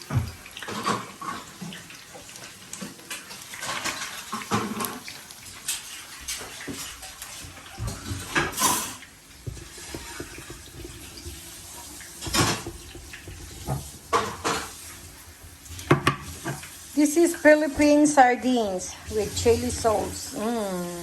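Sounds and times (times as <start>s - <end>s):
water running in kitchen sink: 0.0s - 21.0s
knocks and clatters: 5.7s - 16.9s.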